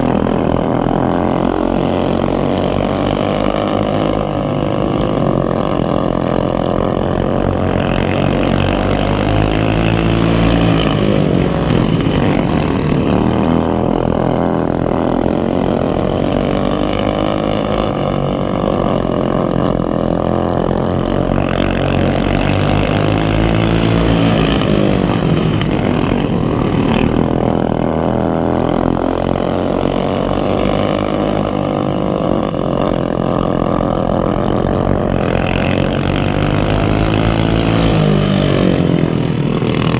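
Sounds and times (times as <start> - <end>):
racing lawnmower engines revving: 0.0 - 39.9.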